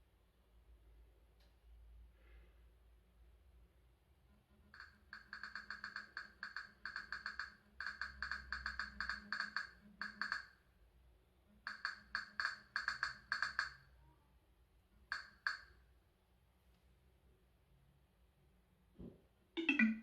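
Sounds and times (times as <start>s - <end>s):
wood-block-like percussive strikes: 4.8s - 10.4s, 19.6s - 20.0s.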